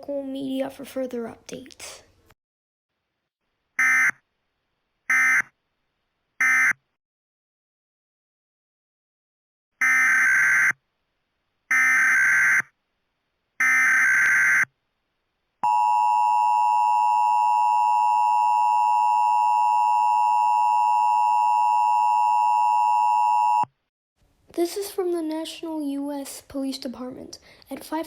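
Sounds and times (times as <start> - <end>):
steady two-tone attention signal: 15.6 - 23.7.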